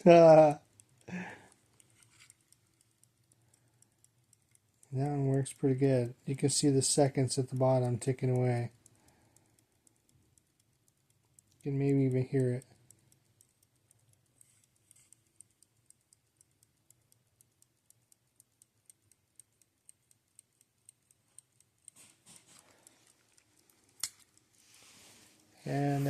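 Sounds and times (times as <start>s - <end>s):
pocket watch ticking: 0.0s - 26.0s
sharp click: 18.6s - 24.4s.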